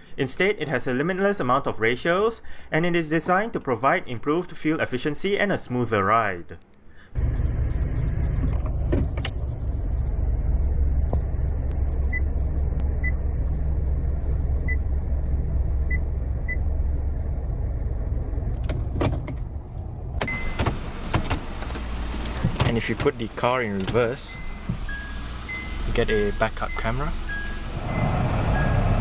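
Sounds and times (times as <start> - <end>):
car engine idling: 7.2 - 29.0.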